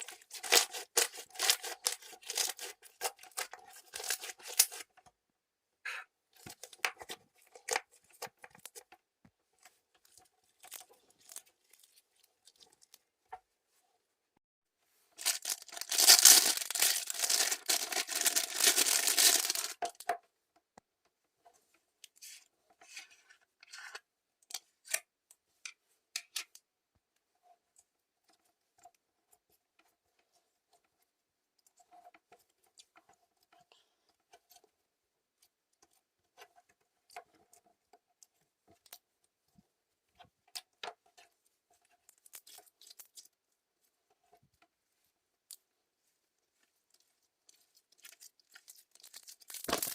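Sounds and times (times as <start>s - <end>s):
slime squished and crackling: 0.0s - 4.8s, 15.2s - 20.1s, 47.7s - 49.9s.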